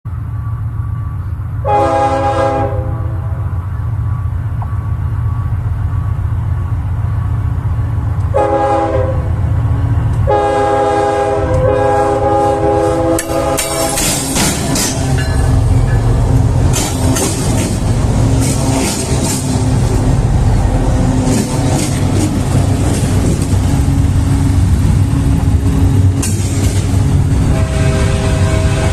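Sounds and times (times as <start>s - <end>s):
low engine rumble: 0.1s - 28.9s
locomotive horn blasts: 1.6s - 3.5s, 8.3s - 9.4s, 10.2s - 15.9s, 27.3s - 28.9s
wheels clattering over rails: 13.2s - 27.2s.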